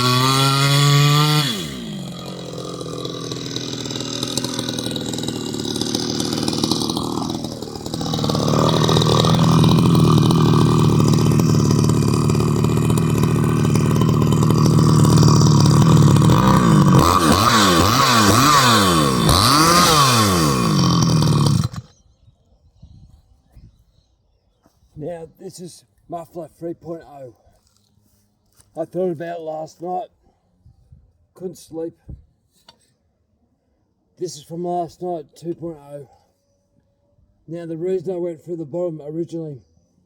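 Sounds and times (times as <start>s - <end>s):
chainsaw cutting timber: 0.0s - 21.9s.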